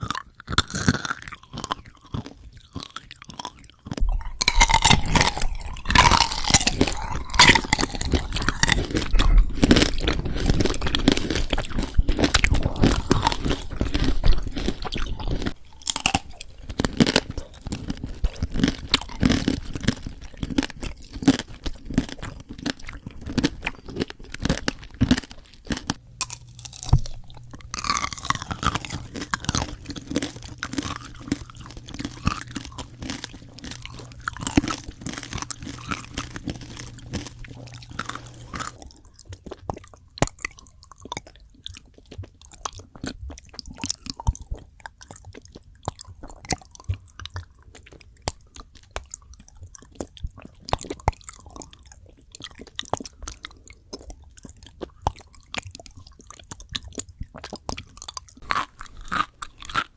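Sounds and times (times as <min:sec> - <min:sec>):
crunching and chewing crisp food: 0:00.0 - 0:59.9
low steady hum: 0:03.9 - 0:43.4.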